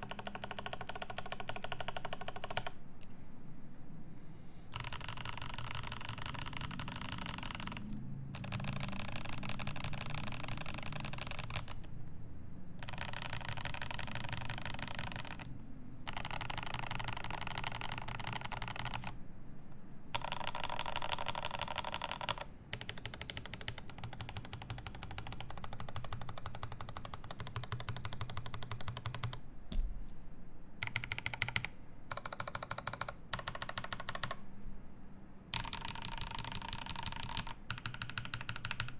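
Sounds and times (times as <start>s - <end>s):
rapid mechanical clicking: 0.0s - 2.8s, 4.8s - 11.9s, 12.8s - 19.2s, 35.6s - 38.9s
low steady hum: 2.7s - 9.5s.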